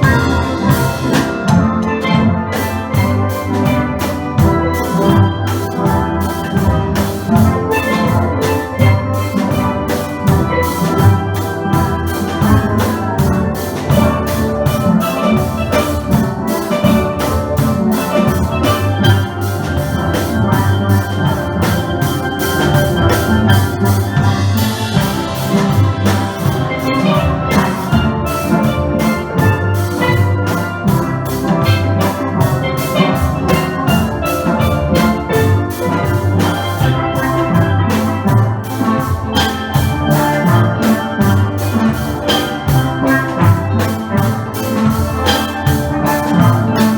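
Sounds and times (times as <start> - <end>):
steady drum beat: 0.0 - 46.9
steel pan band playing: 0.0 - 46.9.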